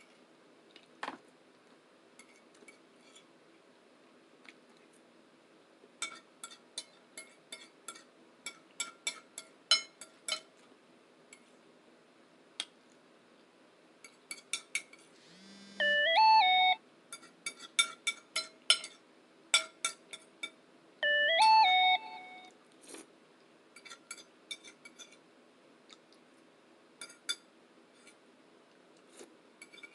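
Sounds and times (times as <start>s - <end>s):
cutlery clinking on dishes: 6.0s - 10.5s, 14.0s - 15.1s, 17.1s - 20.6s, 23.8s - 25.2s, 27.0s - 28.2s, 29.6s - 29.9s
electronic alert tune: 15.4s - 16.8s, 21.0s - 22.5s.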